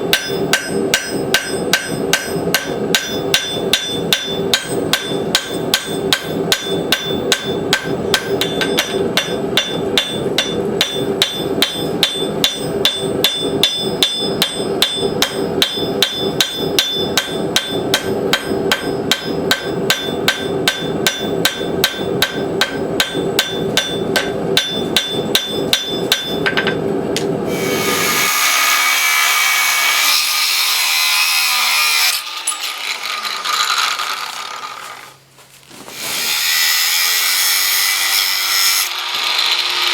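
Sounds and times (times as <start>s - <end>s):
hammer striking steel on anvil: 0.0s - 30.1s
harsh grinding noise: 27.5s - 37.2s.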